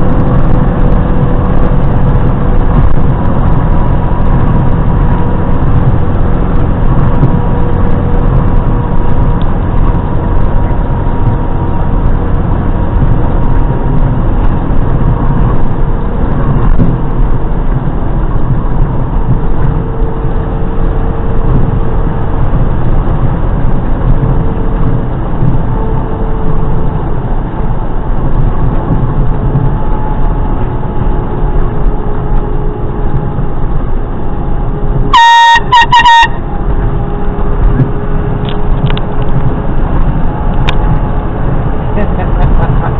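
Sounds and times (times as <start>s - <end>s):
vehicle running and road noise: 0.0s - 42.9s
air horn blast: 35.1s - 36.8s.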